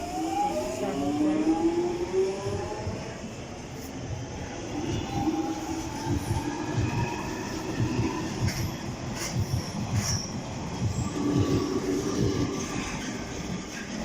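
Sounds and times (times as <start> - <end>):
train wheels and motors rumbling: 0.3 - 14.0.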